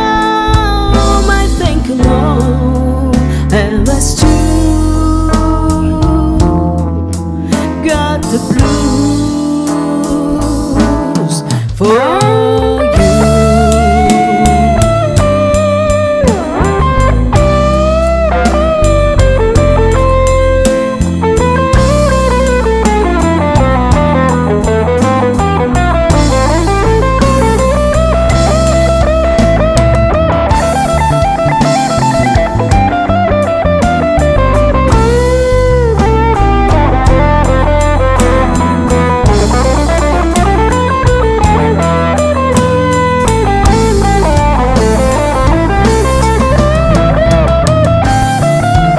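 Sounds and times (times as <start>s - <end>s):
bass guitar: 0.0s - 48.9s
drum kit: 0.0s - 48.9s
electric guitar lead melody: 0.0s - 48.9s.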